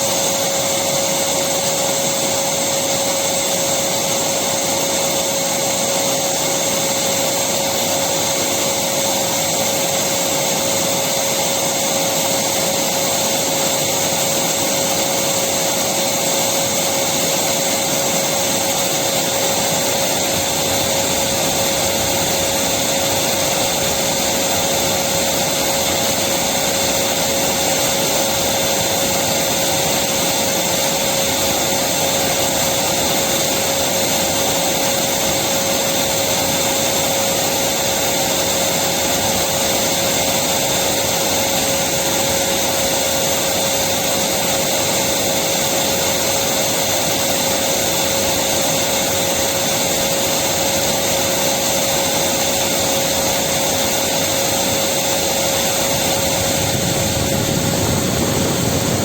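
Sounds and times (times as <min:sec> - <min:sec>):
vacuum cleaner running: 0:00.0 - 0:59.0.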